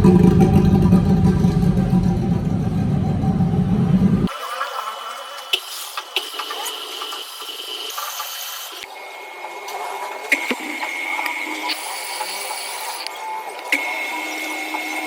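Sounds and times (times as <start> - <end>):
metal lathe whine: 6.8 - 15.0.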